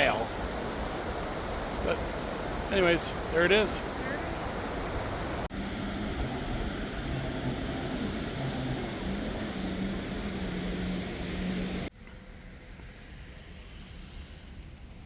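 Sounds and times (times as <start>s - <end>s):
floodwater rushing through spillway: 0.0s - 11.9s
low wavering hum: 0.0s - 15.0s.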